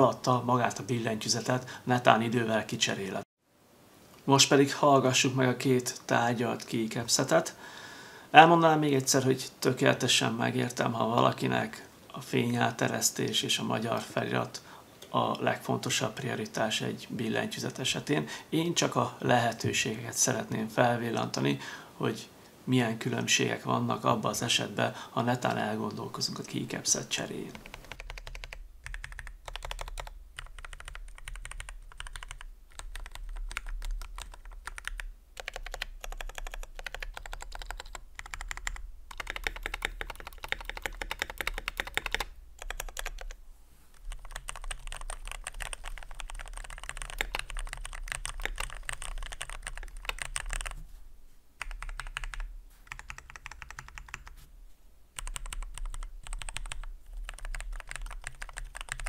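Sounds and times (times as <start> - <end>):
fast typing on mechanical keyboard: 27.4 - 43.4, 44.1 - 50.8, 51.6 - 54.4, 55.2 - 59.0.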